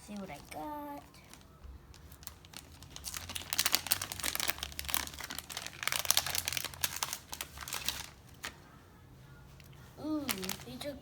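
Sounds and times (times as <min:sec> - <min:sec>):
crinkly wrapper torn open: 0:01.1 - 0:08.6, 0:10.2 - 0:10.7.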